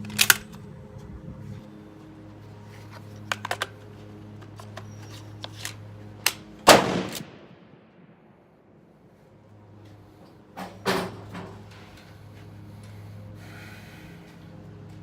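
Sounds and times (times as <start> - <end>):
rifle shot: 6.3 - 8.4.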